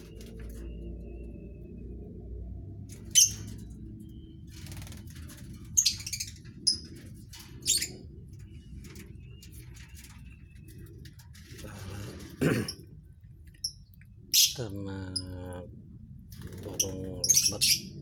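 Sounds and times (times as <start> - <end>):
low steady hum: 0.0 - 18.0
birds chirping shrilly: 2.9 - 15.6, 16.3 - 18.0.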